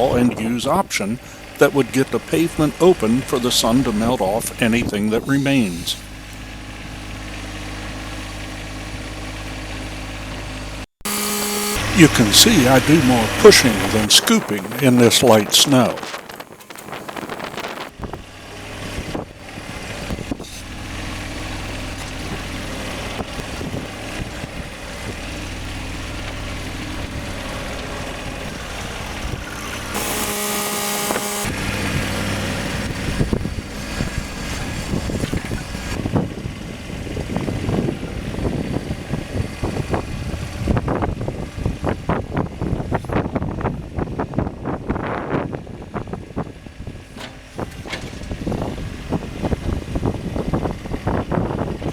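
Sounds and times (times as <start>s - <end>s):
tractor diesel engine running: 0.0s - 51.9s
brief whine: 11.1s - 17.9s, 28.6s - 32.9s.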